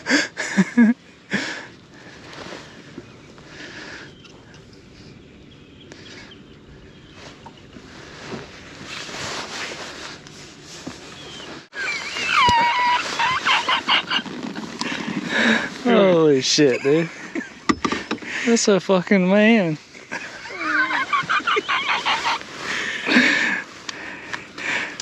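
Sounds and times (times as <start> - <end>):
wind: 0.0 - 25.0
geese honking: 20.6 - 23.0.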